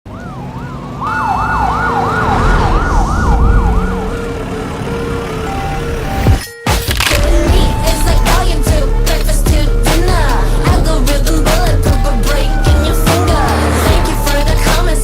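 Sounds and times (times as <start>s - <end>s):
siren slow wail: 0.1s - 6.4s
siren fast yelp: 0.2s - 4.1s.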